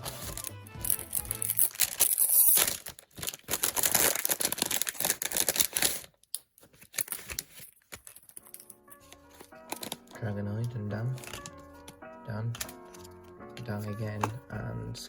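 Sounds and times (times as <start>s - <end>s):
wrapper tearing and crinkling: 0.0s - 10.2s, 11.1s - 12.0s.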